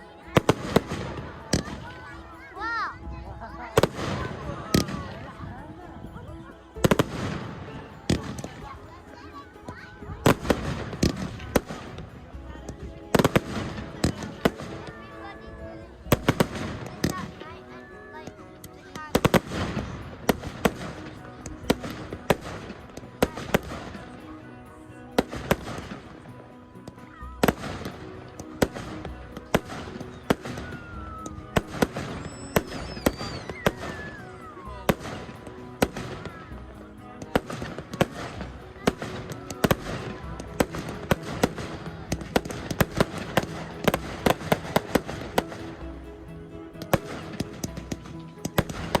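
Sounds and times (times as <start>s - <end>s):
fireworks bangs and crackles: 0.0s - 49.0s
fireworks whistling: 29.5s - 36.2s.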